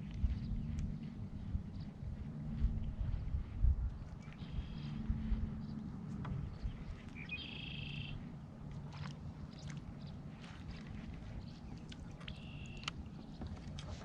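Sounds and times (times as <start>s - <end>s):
wind rumbling on microphone: 0.0s - 14.0s
faint clicks: 11.9s - 13.9s.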